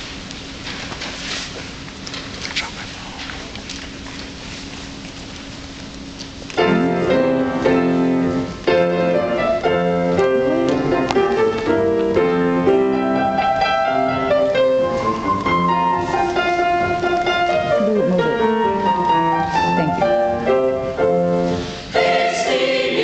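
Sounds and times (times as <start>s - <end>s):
piano accompaniment: 6.5s - 23.0s
choir singing held chords: 21.2s - 23.0s.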